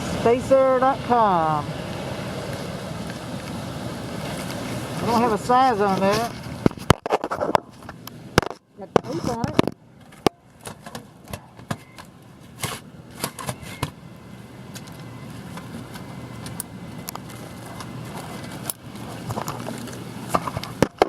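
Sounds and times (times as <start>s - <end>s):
rustling and scraping: 4.2s - 14.0s, 17.2s - 21.0s.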